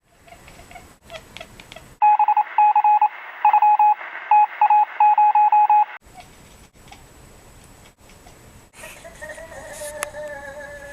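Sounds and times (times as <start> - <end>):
morse code beeps: 2.0 - 6.0.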